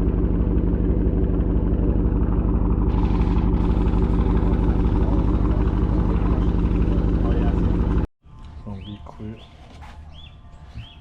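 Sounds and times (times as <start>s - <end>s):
car engine idling: 0.0s - 8.1s.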